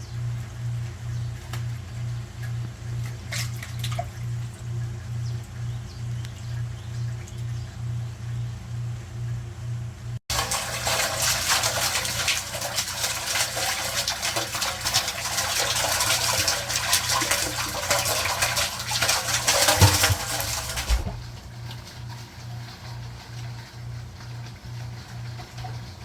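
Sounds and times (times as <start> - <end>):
water splashing and churning: 10.3 - 21.5.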